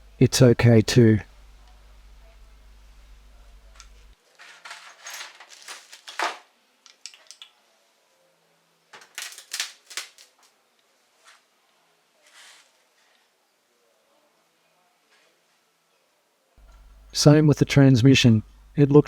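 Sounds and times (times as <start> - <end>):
metal parts clinking: 3.8 - 7.5.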